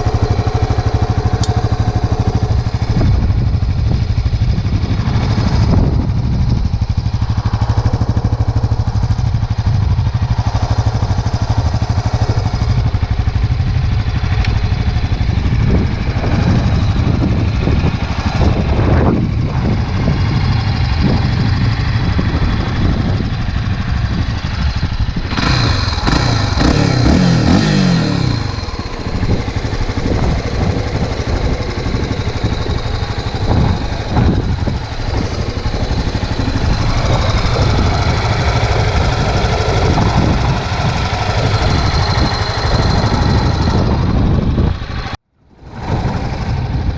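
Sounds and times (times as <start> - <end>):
motorcycle engine idling and revving: 0.0 - 46.9.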